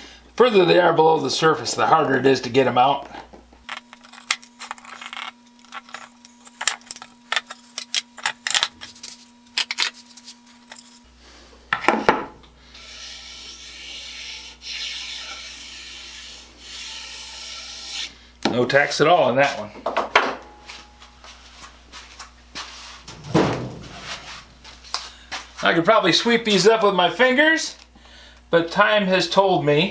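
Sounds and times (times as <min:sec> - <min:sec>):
wood rubbing scrape: 0:12.7 - 0:18.2, 0:22.6 - 0:24.8.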